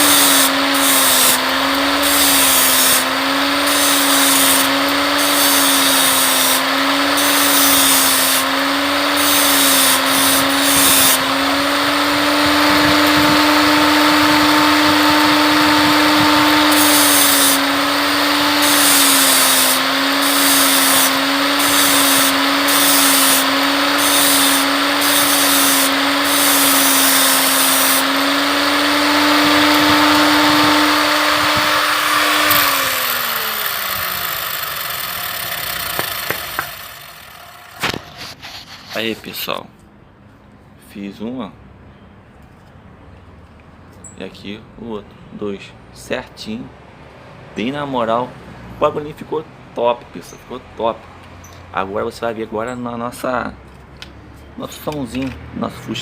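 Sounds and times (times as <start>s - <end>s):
small electric power tool running: 0.0s - 38.2s.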